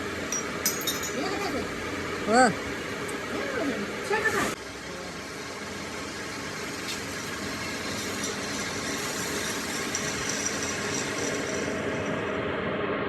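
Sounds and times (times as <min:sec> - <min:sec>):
machine running: 0:04.6 - 0:13.0.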